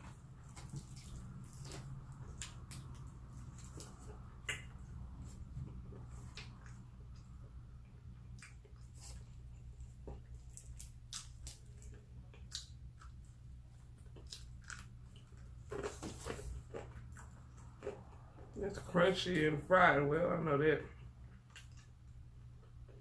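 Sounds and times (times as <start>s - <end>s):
crunchy chewing: 0.0s - 7.3s, 8.2s - 18.6s
low steady hum: 0.0s - 23.0s.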